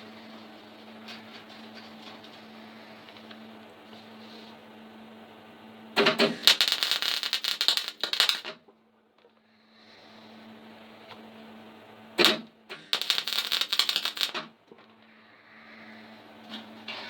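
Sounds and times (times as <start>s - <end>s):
steady low hum: 0.0s - 17.0s
welding arc crackling: 6.0s - 8.6s, 12.2s - 14.5s.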